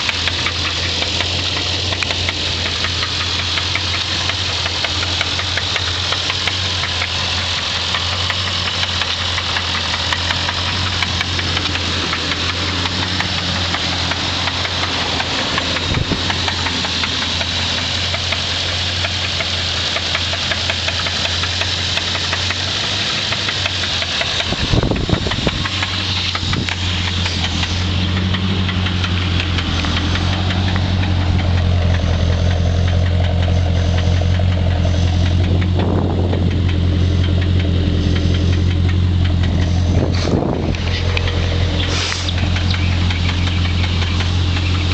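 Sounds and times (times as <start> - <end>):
car engine idling: 0.0 - 44.9
engine knocking: 0.0 - 44.9.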